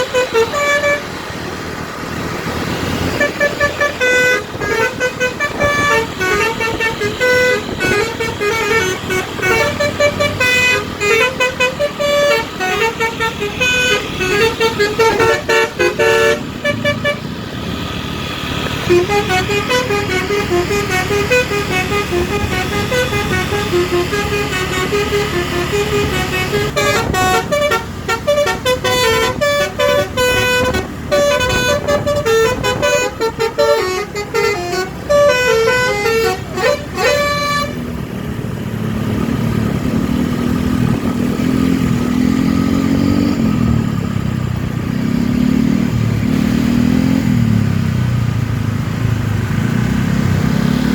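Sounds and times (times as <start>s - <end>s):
air horns playing a tune: 0.0s - 1.2s, 3.0s - 17.3s, 18.8s - 37.9s
bus engine revving: 0.0s - 50.9s.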